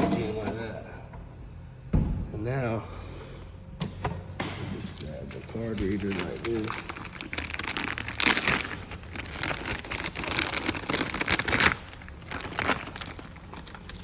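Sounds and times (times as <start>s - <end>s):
packaging crinkling and rustling: 4.6s - 14.0s.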